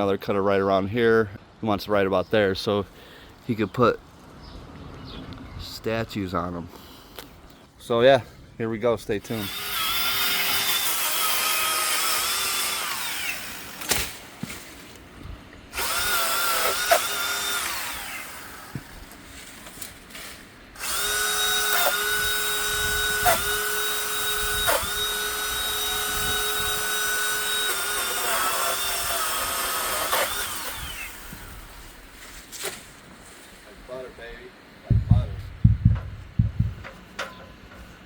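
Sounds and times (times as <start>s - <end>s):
electric pole saw whining: 9.3s - 14.2s, 15.7s - 19.2s, 20.8s - 32.1s
sharp knocks: 34.9s - 37.4s.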